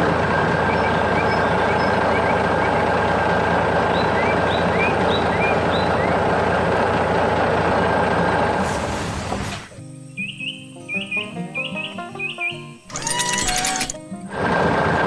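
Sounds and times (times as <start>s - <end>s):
heavy engine running: 0.0s - 9.7s, 12.9s - 15.0s
birds chirping faintly: 0.5s - 8.1s, 9.7s - 13.2s.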